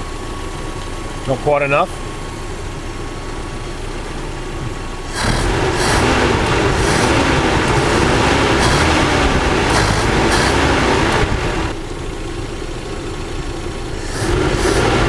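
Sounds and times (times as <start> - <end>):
petrol engine running: 0.0 - 15.0.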